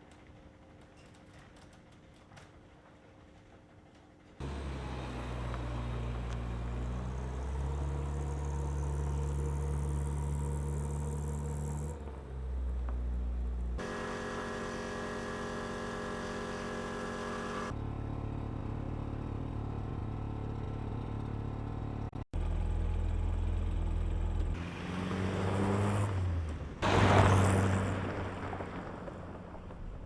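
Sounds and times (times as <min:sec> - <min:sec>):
car engine running: 0:13.8 - 0:17.8.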